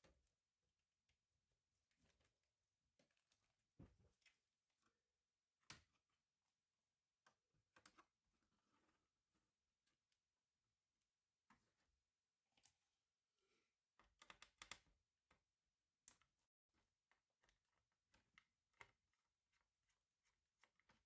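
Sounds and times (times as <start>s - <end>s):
faint clicks and taps: 14.0s - 16.3s, 17.1s - 21.0s.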